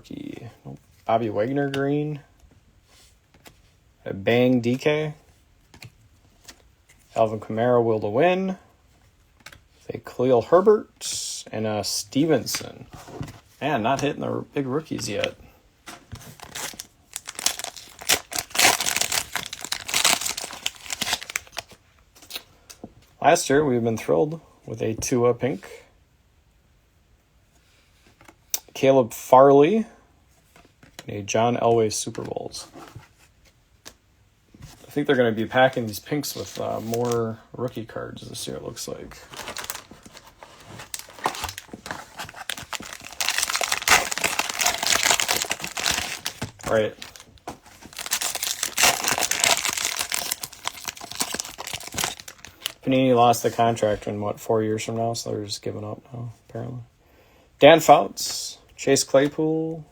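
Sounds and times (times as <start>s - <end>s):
foil wrapper crinkling: 16.3s - 21.8s, 39.2s - 52.8s.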